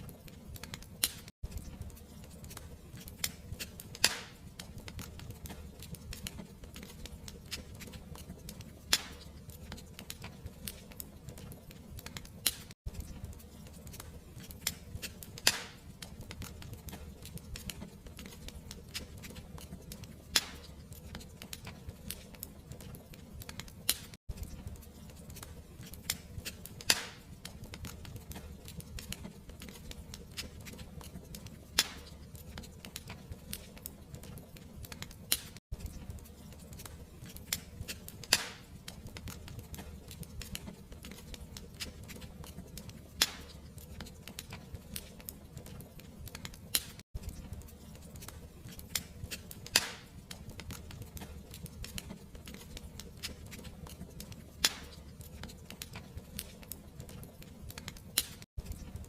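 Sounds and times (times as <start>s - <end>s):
fireplace fire crackling: 0.0s - 59.0s
sharp fire pops: 0.5s - 1.8s, 2.4s - 7.9s, 8.9s - 11.1s, 12.0s - 17.8s, 20.0s - 22.2s, 25.4s - 30.5s, 31.4s - 32.2s, 36.7s - 40.7s, 42.8s - 43.6s, 48.2s - 52.0s, 54.6s - 55.1s.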